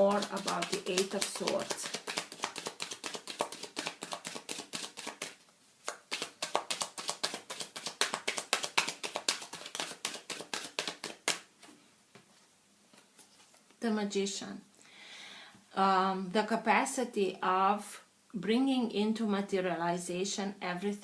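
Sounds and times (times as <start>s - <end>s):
cards being shuffled: 0.0s - 11.8s.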